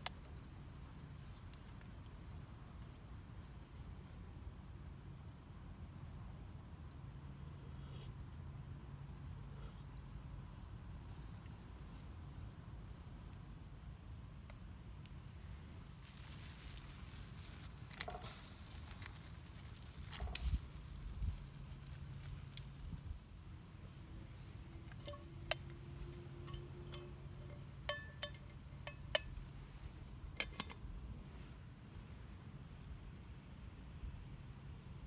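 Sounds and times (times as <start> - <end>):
cookware clinking: 25.0 - 25.7, 26.3 - 29.3.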